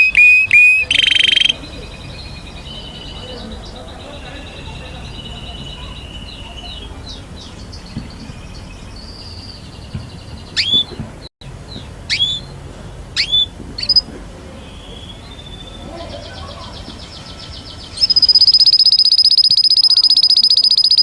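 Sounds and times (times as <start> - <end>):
sharp falling bird chirps: 0.0 - 1.8
canary singing trills: 0.0 - 11.0, 11.7 - 21.0.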